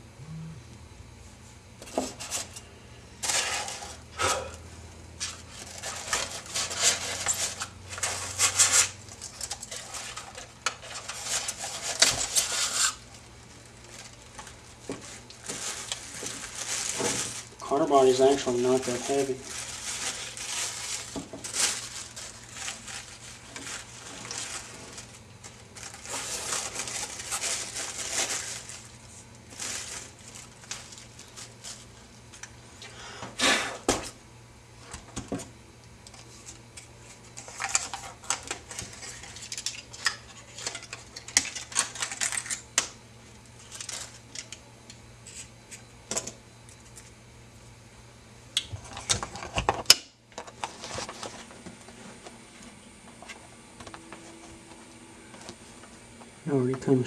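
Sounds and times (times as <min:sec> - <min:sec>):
packaging rustling: 0:05.2 - 0:32.5, 0:36.1 - 0:42.8, 0:43.6 - 0:44.6.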